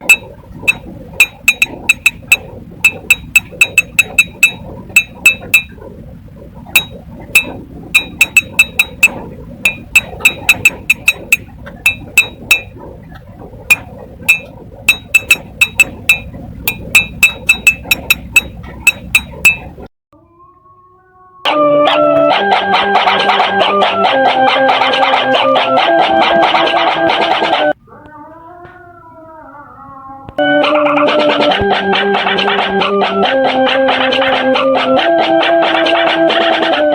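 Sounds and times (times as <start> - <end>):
sharp ringing clicks: 0.0 - 5.7, 6.8 - 12.7, 13.7 - 19.7
low steady hum: 0.0 - 26.6.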